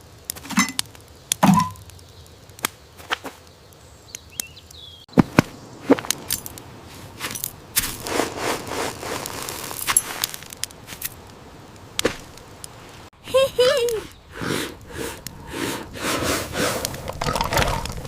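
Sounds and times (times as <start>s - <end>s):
rustling noise: 5.1s - 13.1s, 13.8s - 18.0s.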